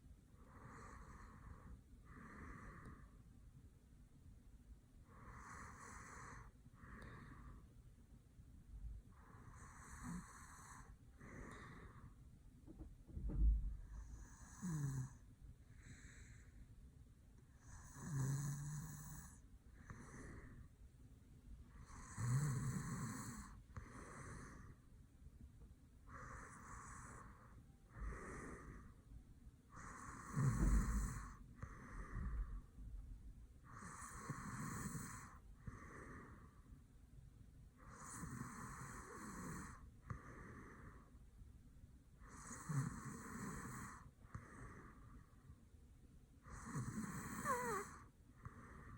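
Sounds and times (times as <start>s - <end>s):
man snoring: 9.5s - 11.8s, 14.0s - 15.2s, 17.6s - 20.4s, 21.8s - 24.7s, 29.8s - 32.0s, 33.7s - 36.2s, 37.8s - 40.6s, 42.3s - 44.0s, 46.5s - 48.0s.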